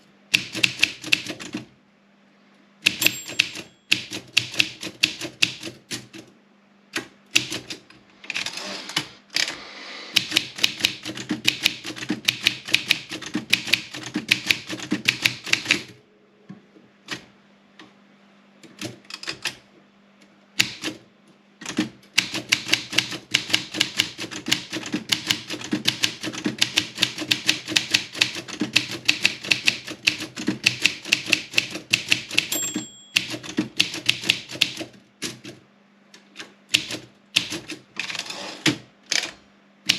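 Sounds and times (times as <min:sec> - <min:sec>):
manual typewriter typing: 0:00.3 - 0:01.7, 0:02.8 - 0:06.3, 0:07.3 - 0:09.5, 0:10.2 - 0:15.9, 0:18.8 - 0:19.6, 0:20.6 - 0:21.0, 0:21.6 - 0:35.6, 0:36.4 - 0:39.9
typewriter margin bell: 0:02.9 - 0:04.0, 0:32.4 - 0:33.5.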